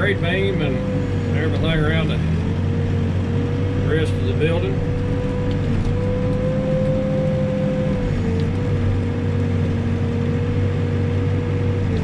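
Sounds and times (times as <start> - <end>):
backhoe diesel engine under load: 0.0 - 12.0.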